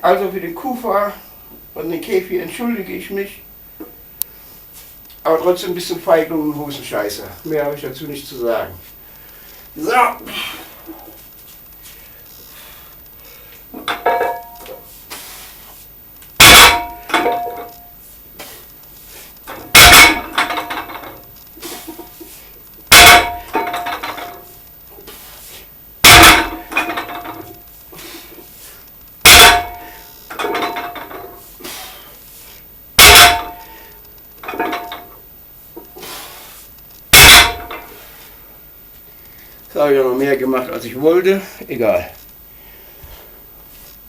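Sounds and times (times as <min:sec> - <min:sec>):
metal weights clanging: 0:13.8 - 0:14.8, 0:16.4 - 0:17.8, 0:19.5 - 0:22.2, 0:22.9 - 0:24.5, 0:26.0 - 0:28.2, 0:29.2 - 0:32.0, 0:33.0 - 0:35.2, 0:37.1 - 0:38.0.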